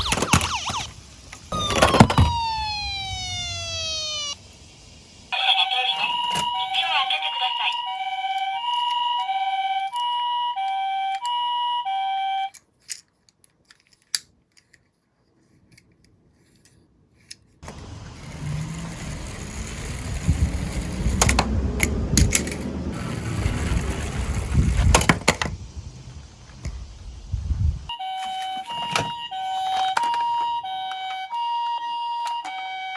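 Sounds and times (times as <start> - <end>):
two-tone ambulance siren: 0.0 - 4.4, 5.3 - 12.6, 27.9 - 32.9
toy car rattling down plastic slope: 17.6 - 25.5.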